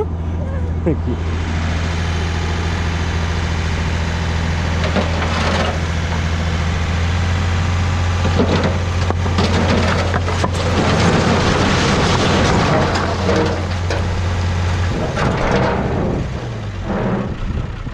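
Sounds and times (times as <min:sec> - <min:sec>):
diesel engine humming: 0:00.0 - 0:17.9
rough rattle or scrape: 0:03.9 - 0:06.6, 0:08.2 - 0:17.9.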